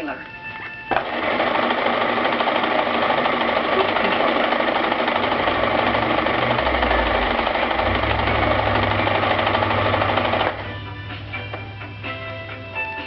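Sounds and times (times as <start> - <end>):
soft background music: 0.0 - 1.8, 5.5 - 13.0
sewing machine running fast: 0.9 - 10.8.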